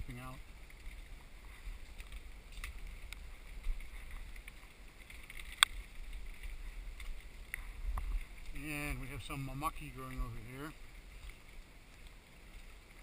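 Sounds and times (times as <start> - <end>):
low wind rumble: 0.0 - 13.0
footsteps on a trail: 0.2 - 13.0.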